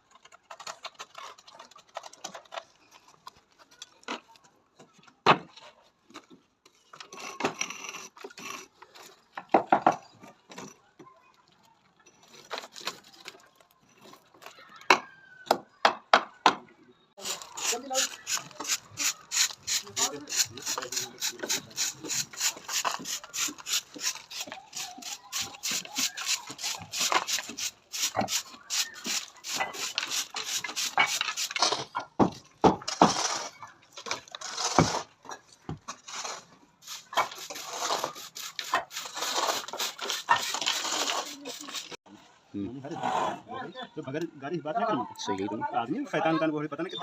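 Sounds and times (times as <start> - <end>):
hand tool rasping hard surface: 17.2 - 31.9, 36.1 - 42.0.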